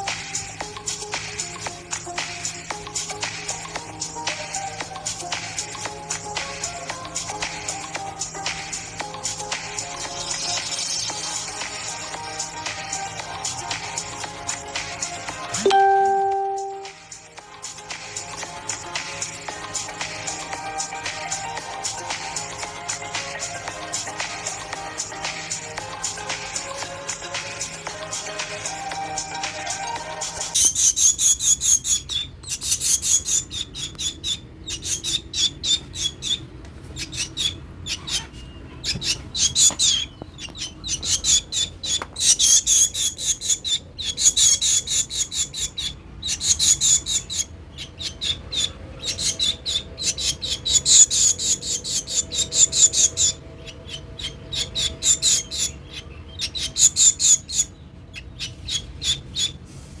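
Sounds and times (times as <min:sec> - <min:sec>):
baby bird begging chirps: 0:15.5 - 0:16.9, 0:30.4 - 0:59.6.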